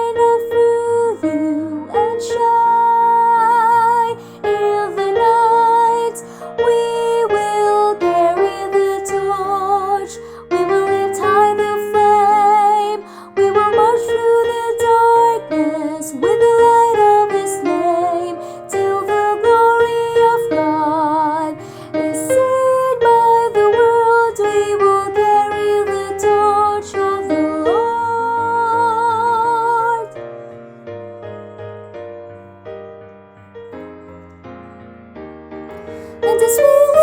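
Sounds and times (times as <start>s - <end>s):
woman singing hymn: 0.0s - 30.2s, 36.2s - 37.0s
piano accompaniment: 0.0s - 37.0s.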